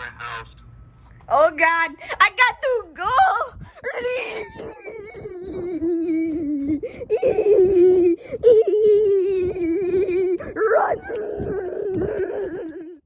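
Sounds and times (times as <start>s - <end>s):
child wailing: 3.8s - 13.0s.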